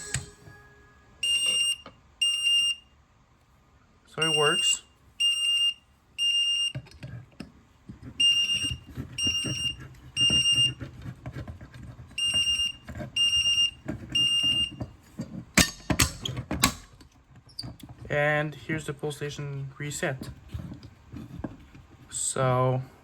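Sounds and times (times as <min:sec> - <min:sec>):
fire alarm horn blasts: 0:00.0 - 0:02.9, 0:04.2 - 0:06.7, 0:08.2 - 0:10.8, 0:12.2 - 0:14.7
faint knocks and handling noise: 0:06.7 - 0:13.2, 0:13.8 - 0:18.2, 0:20.0 - 0:22.2.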